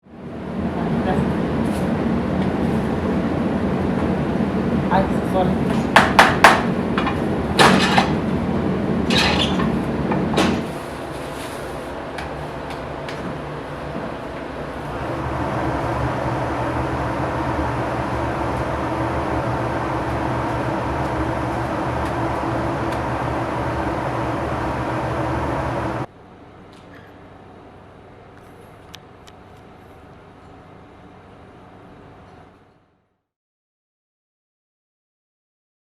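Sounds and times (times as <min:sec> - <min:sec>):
mechanical hum with low drone: 0:00.1 - 0:33.2
kitchen knocks and clatters: 0:09.1 - 0:09.7.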